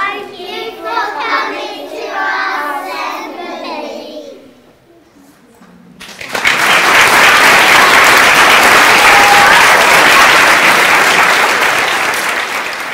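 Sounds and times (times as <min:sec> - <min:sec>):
audience applauding: 0:06.0 - 0:12.9.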